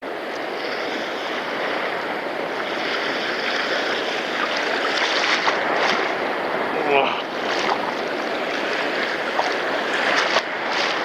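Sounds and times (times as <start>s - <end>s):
sea waves washing on shore: 0.0s - 11.0s.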